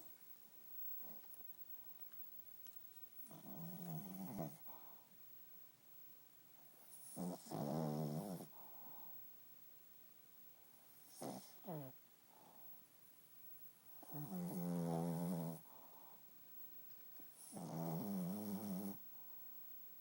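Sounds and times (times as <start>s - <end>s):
dog snoring: 3.2s - 4.8s, 6.8s - 8.6s, 11.0s - 12.0s, 14.0s - 15.7s, 17.3s - 19.0s.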